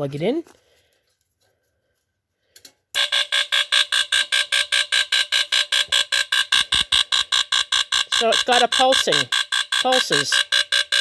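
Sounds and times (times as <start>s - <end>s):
pulsing smoke alarm tone: 3.0s - 11.0s.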